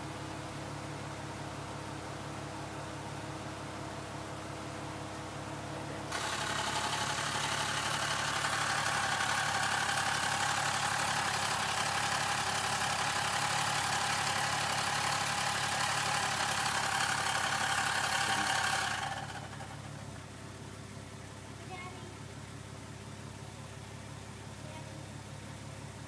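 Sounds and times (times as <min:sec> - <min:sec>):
car engine idling: 0:04.8 - 0:26.0
loud ticking from drivetrain: 0:06.1 - 0:20.2.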